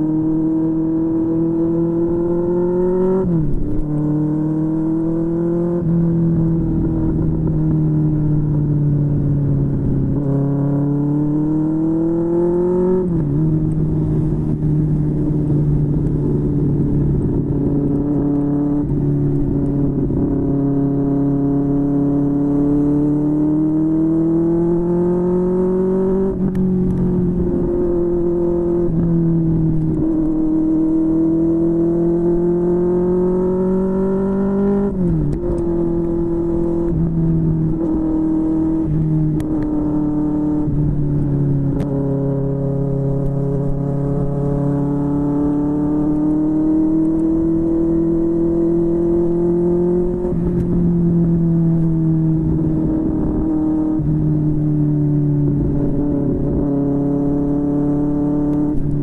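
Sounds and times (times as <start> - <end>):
motorcycle engine revving: 0.0 - 59.0
wind and road noise: 0.0 - 59.0.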